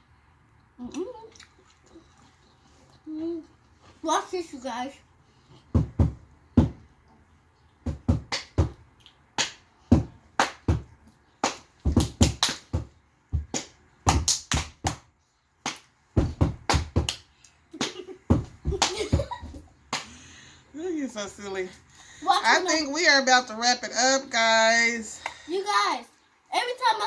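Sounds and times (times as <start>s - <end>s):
child stomping and stepping: 5.7s - 6.8s, 7.8s - 8.8s, 9.9s - 15.0s, 16.2s - 17.2s, 17.9s - 19.7s.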